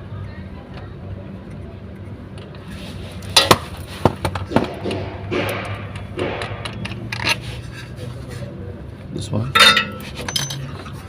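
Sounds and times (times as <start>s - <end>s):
sharp metal strikes: 4.6s - 6.8s
metal tools clinking: 9.4s - 11.0s.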